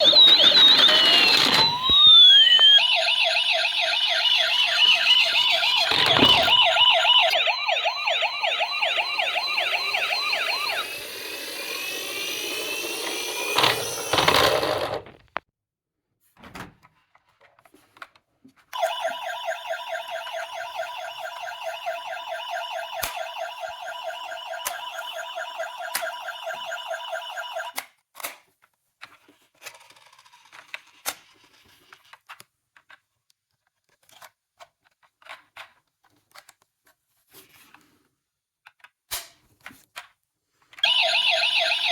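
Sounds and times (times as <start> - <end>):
toy sirens warbling: 0.0 - 14.9, 18.8 - 27.8, 40.8 - 41.9.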